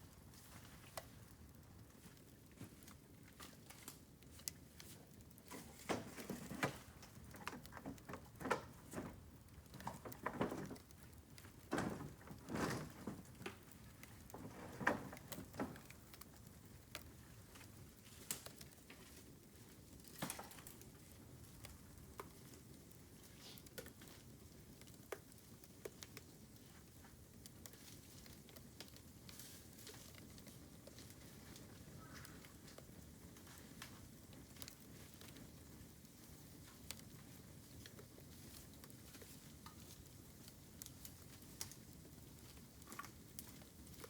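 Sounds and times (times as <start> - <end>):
bonfire crackles and pops: 0.0 - 44.0
bamboo rustling and knocking: 2.6 - 16.2.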